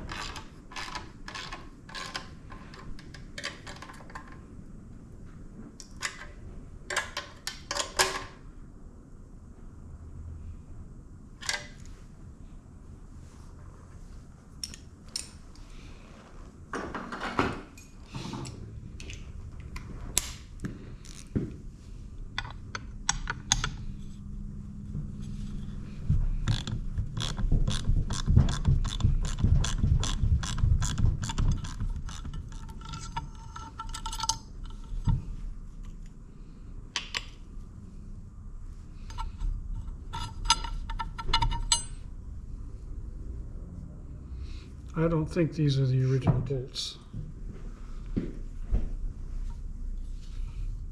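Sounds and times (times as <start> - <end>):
metal tools clinking: 31.6 - 35.1, 40.1 - 42.0.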